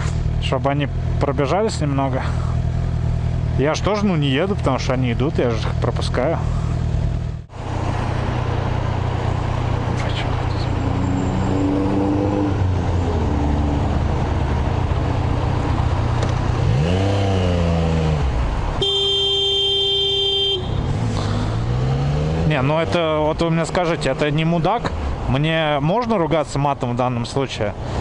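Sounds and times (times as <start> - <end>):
motorcycle engine running: 0.0 - 9.4
loud horn toot: 18.8 - 20.9.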